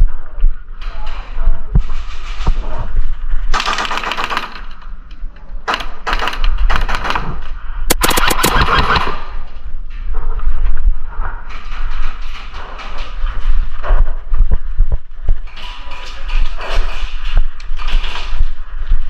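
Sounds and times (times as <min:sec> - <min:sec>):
airsoft guns firing bursts: 0:03.6 - 0:04.7, 0:07.9 - 0:09.3.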